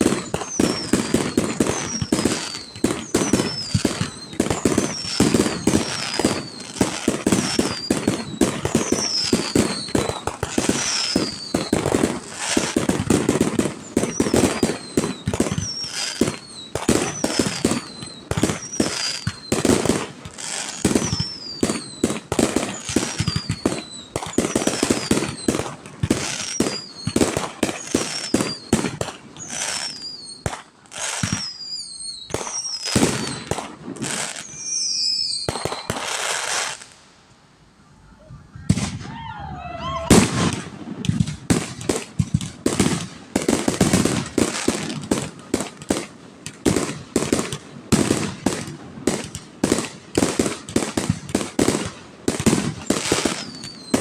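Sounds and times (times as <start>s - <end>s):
firework shells booming: 0.0s - 29.2s
high falling whistles: 0.2s - 6.8s, 7.4s - 10.1s, 10.9s - 11.8s, 29.4s - 30.4s, 31.2s - 33.5s, 34.3s - 35.9s.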